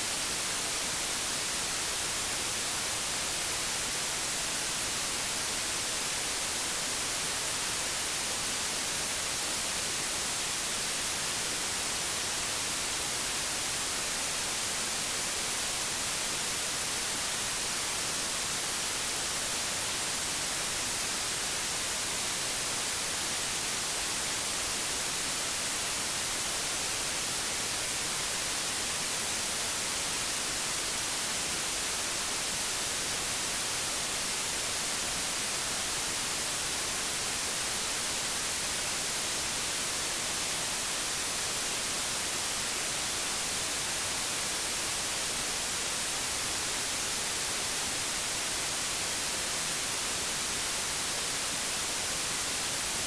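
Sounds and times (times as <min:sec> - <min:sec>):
television static hiss: 0:00.0 - 0:53.0.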